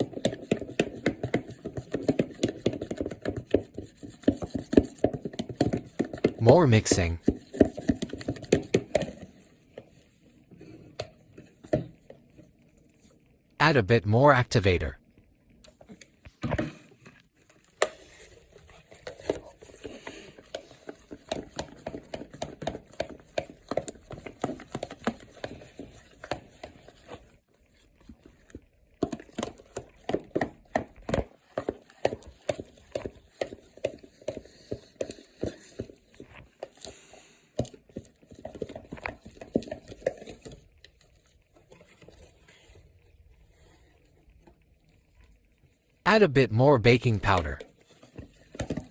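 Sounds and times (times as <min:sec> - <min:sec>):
slime stirred in a bowl: 0:00.0 - 0:13.2, 0:15.7 - 0:46.0, 0:47.4 - 0:48.9.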